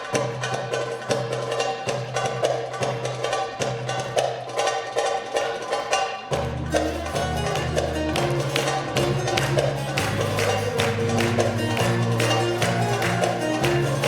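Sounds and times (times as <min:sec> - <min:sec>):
percussion beat: 0:00.0 - 0:14.0
plucked strings: 0:00.0 - 0:14.0
bass line: 0:06.4 - 0:14.0.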